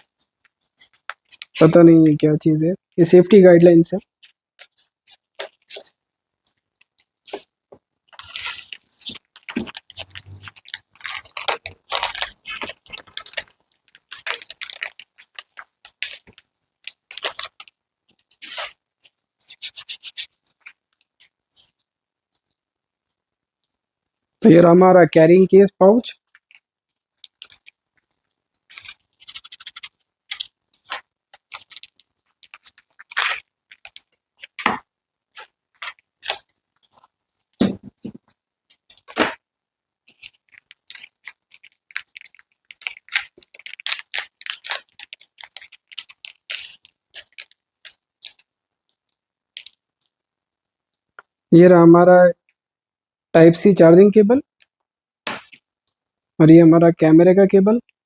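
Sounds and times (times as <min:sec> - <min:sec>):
paper rustling and crinkling: 0:00.0 - 0:01.8, 0:04.0 - 0:07.5, 0:08.1 - 0:21.8, 0:27.2 - 0:39.4, 0:40.0 - 0:50.1.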